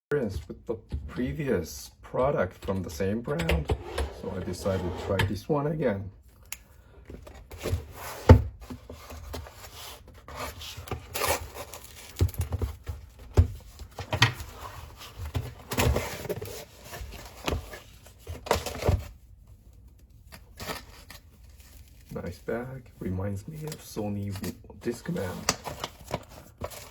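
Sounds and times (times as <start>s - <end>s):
packaging rustling and tearing: 10.3s - 13.0s, 20.2s - 22.2s, 23.6s - 26.9s.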